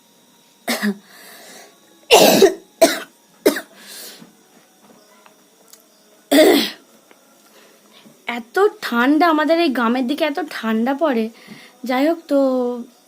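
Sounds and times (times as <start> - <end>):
woman coughing: 0.7 - 1.0, 2.1 - 3.7, 6.3 - 6.8
faint breaths: 1.0 - 1.8, 11.3 - 11.8.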